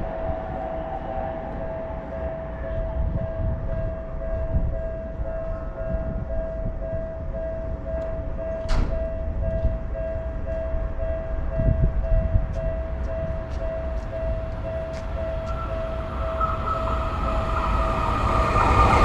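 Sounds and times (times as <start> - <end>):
passing train rumble: 0.0 - 19.0
railroad crossing alarm tone: 0.0 - 19.0.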